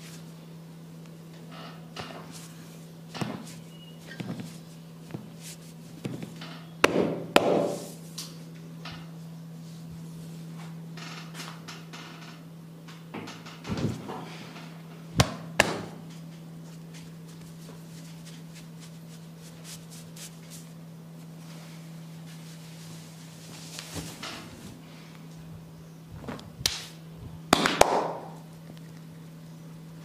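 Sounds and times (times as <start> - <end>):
hands rubbing skin: 3.4 - 6.2, 16.6 - 21.4
hands patting: 15.2 - 20.8
sharp hand smacks: 26.6 - 27.0, 27.6 - 28.4.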